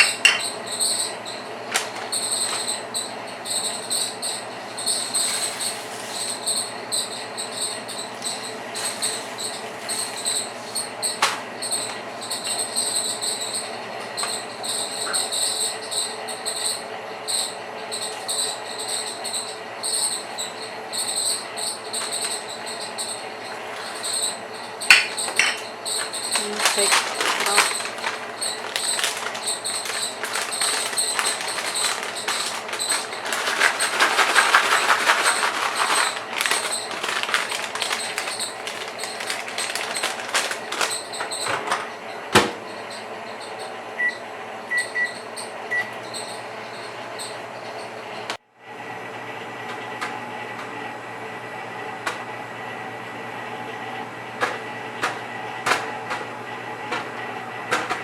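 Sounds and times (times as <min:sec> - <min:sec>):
popcorn popping in paper bag: 0:00.0 - 0:03.0, 0:24.9 - 0:41.4
microwave oven hum: 0:00.0 - 0:58.0
short microwave beeps: 0:44.0 - 0:46.3.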